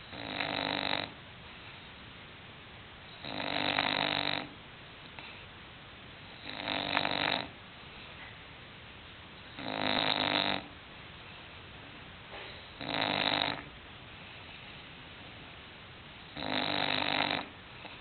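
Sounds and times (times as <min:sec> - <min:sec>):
dog snoring: 0:00.0 - 0:01.2, 0:03.1 - 0:04.6, 0:06.3 - 0:07.6, 0:09.4 - 0:10.8, 0:12.8 - 0:13.7, 0:16.2 - 0:18.0.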